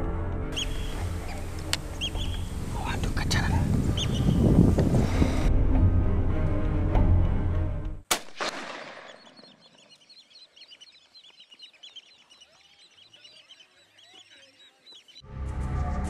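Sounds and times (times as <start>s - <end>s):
birds calling: 0.5s - 5.5s, 8.6s - 15.2s
rifle shots: 8.1s - 9.6s.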